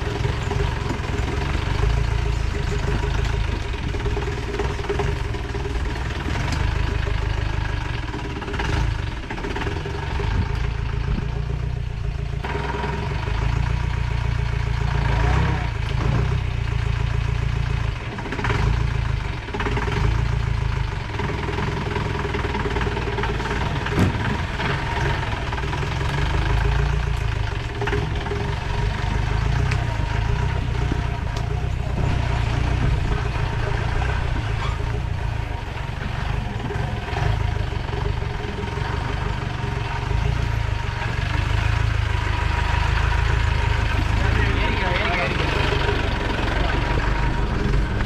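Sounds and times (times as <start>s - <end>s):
vehicle engine running: 0.0s - 48.0s
knocks and rattles: 15.8s - 48.0s.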